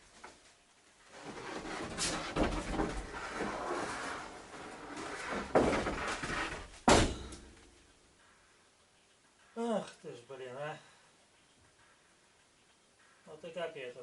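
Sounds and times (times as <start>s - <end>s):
building material rustling and scraping: 0.0s - 10.6s.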